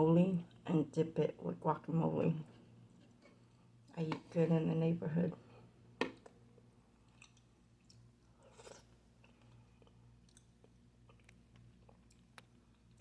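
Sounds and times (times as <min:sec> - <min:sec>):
faint chewing of crunchy snack: 0:02.4 - 0:04.1, 0:05.4 - 0:13.0.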